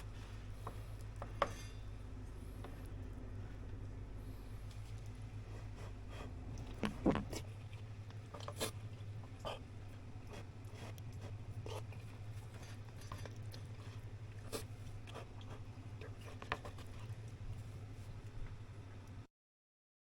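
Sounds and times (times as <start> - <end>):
low steady hum: 0.0 - 19.3.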